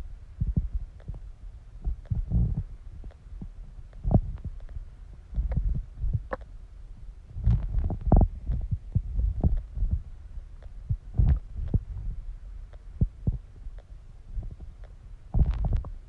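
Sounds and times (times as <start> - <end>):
stomach gurgling: 5.4 - 6.5, 7.4 - 10.0, 15.3 - 16.0.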